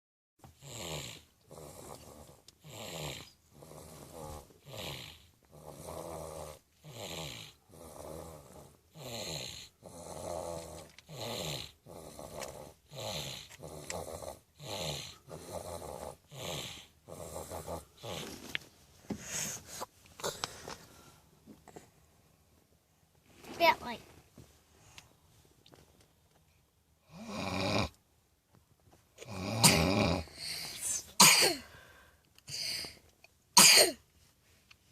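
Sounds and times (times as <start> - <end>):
rhythmic snoring: 0.5 - 18.6, 27.0 - 28.0, 29.2 - 31.8.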